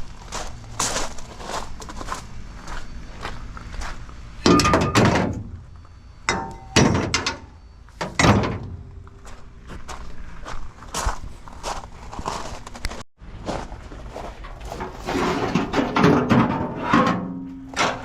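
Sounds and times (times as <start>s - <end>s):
footsteps: 0.0s - 18.0s
scrap metal clanking: 4.4s - 5.6s, 6.3s - 9.3s, 14.2s - 18.0s.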